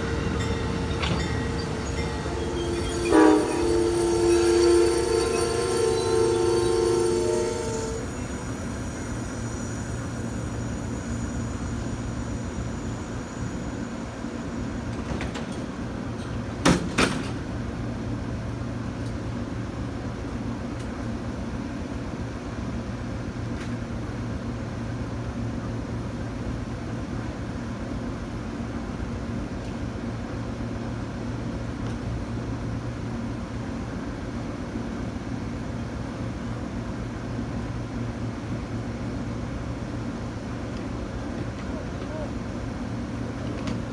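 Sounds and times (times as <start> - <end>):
diesel locomotive idling: 0.0 - 15.0.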